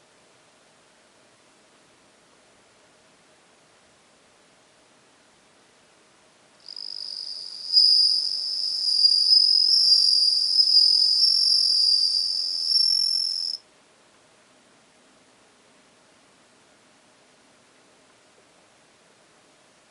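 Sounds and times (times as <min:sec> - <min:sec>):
cricket ringing trill: 0:06.6 - 0:13.6.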